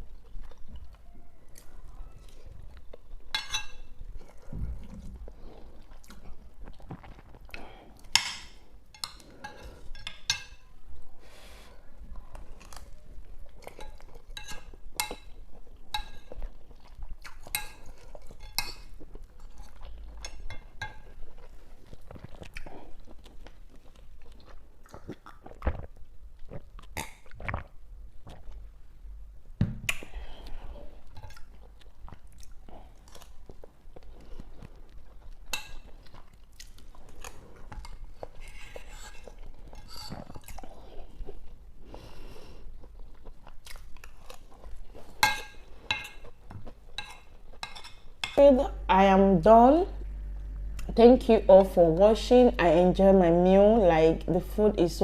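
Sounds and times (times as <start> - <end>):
person chewing with mouth smacks: 0.0 - 8.2, 12.1 - 28.9, 29.8 - 48.4.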